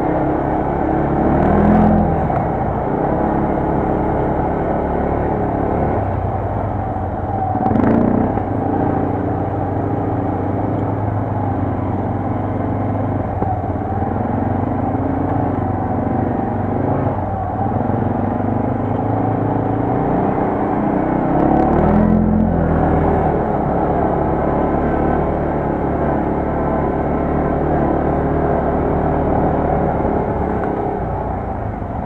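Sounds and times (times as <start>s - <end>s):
quad bike engine revving: 0.0s - 6.1s, 7.6s - 10.8s, 14.0s - 31.0s.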